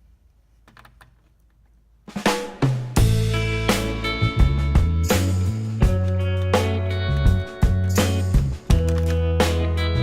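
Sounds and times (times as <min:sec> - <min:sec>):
steady drum beat: 0:02.1 - 0:10.0
guitar chords: 0:03.0 - 0:10.0.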